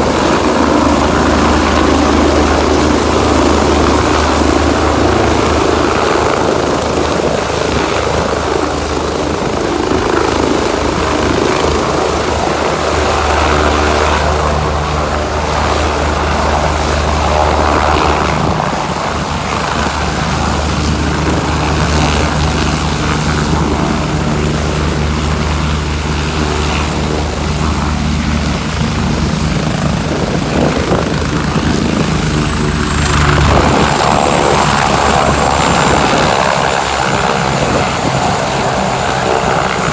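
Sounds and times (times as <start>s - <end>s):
helicopter rotor drone: 0.0s - 39.9s
high turbine whine: 0.0s - 39.9s.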